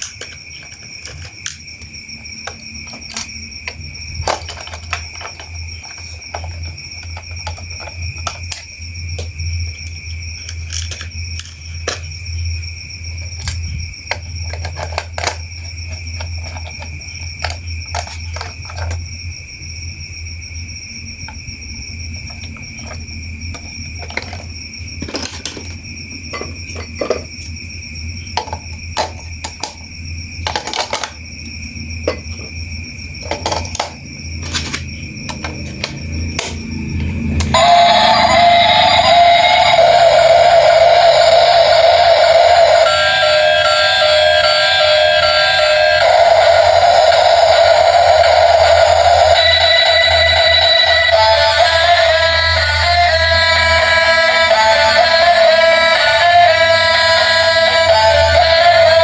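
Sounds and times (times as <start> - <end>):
toy train motor whining: 13.2 - 19.0, 33.2 - 36.6, 37.4 - 59.0.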